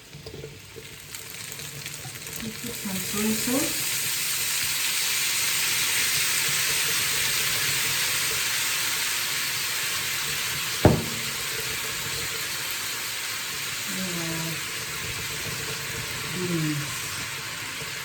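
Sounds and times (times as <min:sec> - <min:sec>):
food sizzling in a frying pan: 0:00.0 - 0:18.0
sharp knock: 0:10.9 - 0:11.5.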